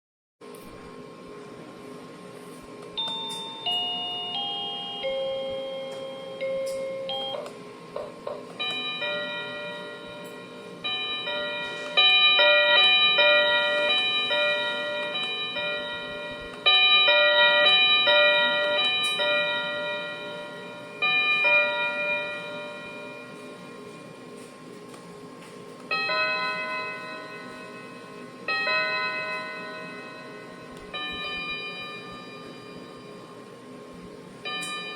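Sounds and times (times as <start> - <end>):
electronic doorbell chime melody: 3.0 - 7.5, 8.6 - 23.9, 25.9 - 33.2, 34.5 - 34.9.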